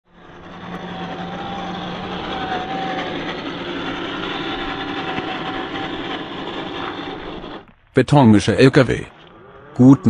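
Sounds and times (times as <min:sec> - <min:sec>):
model truck motor whine: 0:00.1 - 0:07.7.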